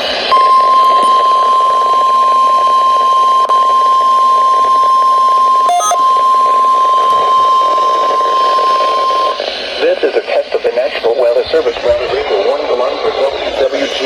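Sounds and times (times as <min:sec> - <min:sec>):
radio static: 0:00.0 - 0:14.0
steady warning alarm beep: 0:00.3 - 0:09.8.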